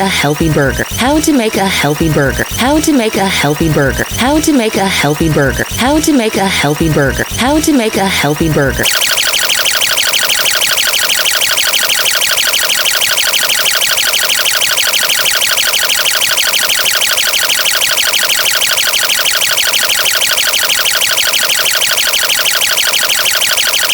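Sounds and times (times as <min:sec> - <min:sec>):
harsh electronic buzzing: 0:00.0 - 0:06.2.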